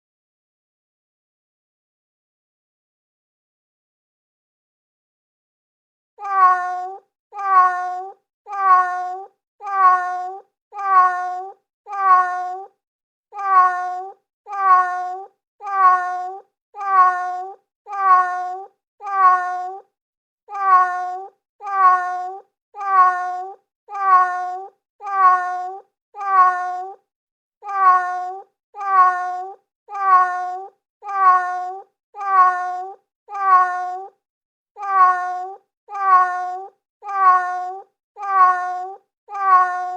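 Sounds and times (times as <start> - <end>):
cat meowing: 6.2 - 12.8, 13.4 - 19.9, 20.5 - 27.0, 27.6 - 34.2, 34.8 - 39.9.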